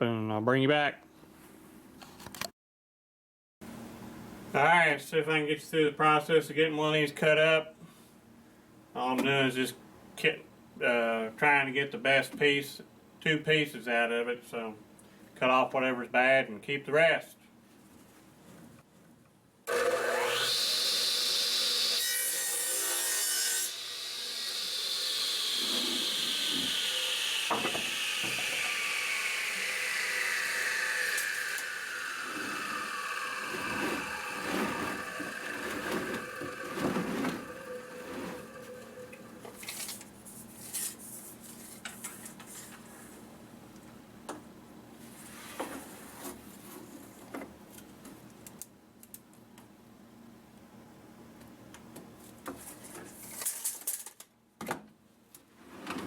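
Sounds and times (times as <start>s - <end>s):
radial arm saw whining: 19.7s - 22.4s, 23.6s - 39.6s
saw cutting wooden board: 19.7s - 39.6s.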